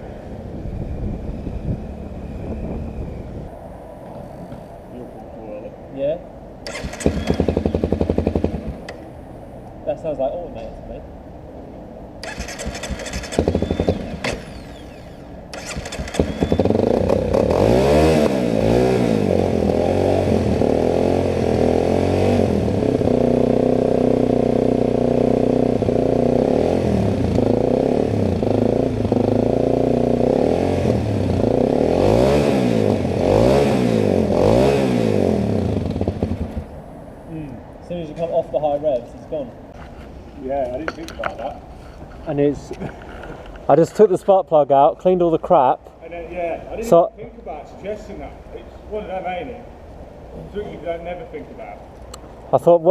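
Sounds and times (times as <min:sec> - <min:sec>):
motorcycle engine revving: 0:00.7 - 0:03.5, 0:06.6 - 0:09.0, 0:12.2 - 0:36.9
motorcycle engine cranking: 0:06.6 - 0:09.0, 0:12.2 - 0:17.6.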